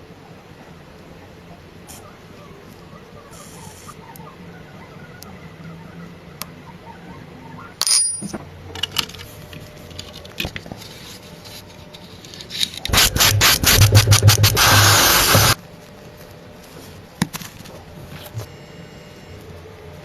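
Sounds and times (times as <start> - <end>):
sharp clicks and knocks: 12.5 - 15.6.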